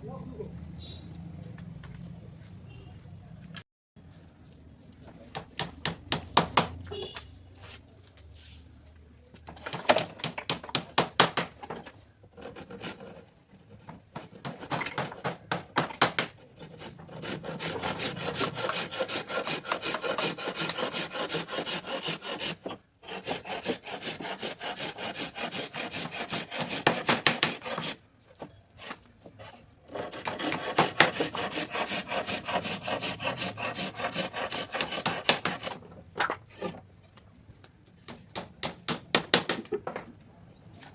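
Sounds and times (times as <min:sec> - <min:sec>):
hand tool scraping wood: 0:09.6 - 0:36.8.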